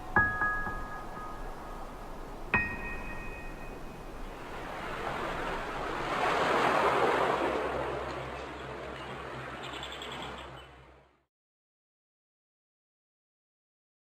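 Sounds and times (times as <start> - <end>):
wave washing in: 0.0 - 9.7.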